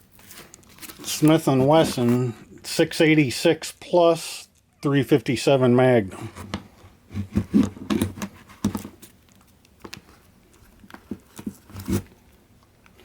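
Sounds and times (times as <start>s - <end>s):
rustling: 0.0s - 2.4s.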